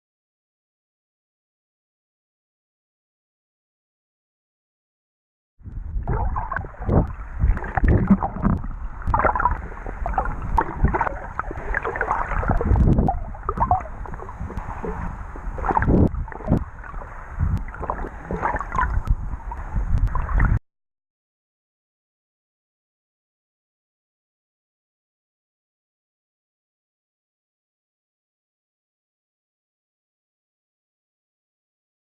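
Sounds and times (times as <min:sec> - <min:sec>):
wind rumble on microphone: 0:05.6 - 0:20.6
seawater sloshing and splashing: 0:05.9 - 0:20.6.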